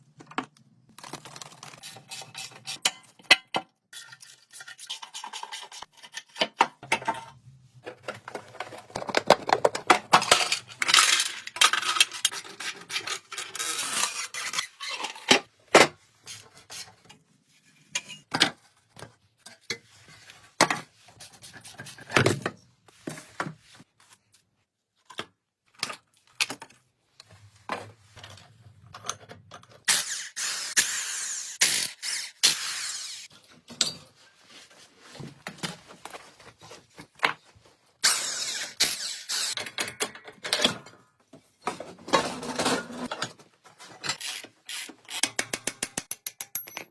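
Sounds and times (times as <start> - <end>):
metal tools clinking and knocking: 46.2 - 46.9.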